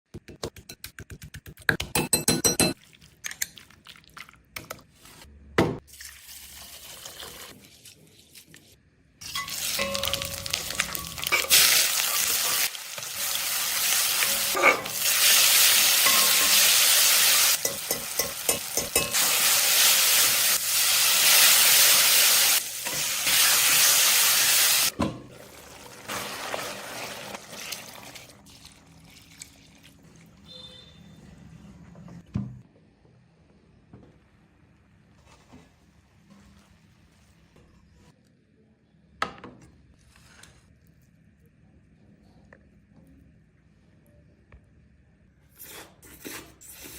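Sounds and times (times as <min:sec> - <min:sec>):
spoon clinking and scraping: 0:01.9 - 0:03.6, 0:09.2 - 0:13.3, 0:16.0 - 0:19.5
food sizzling in a pan: 0:09.2 - 0:28.2.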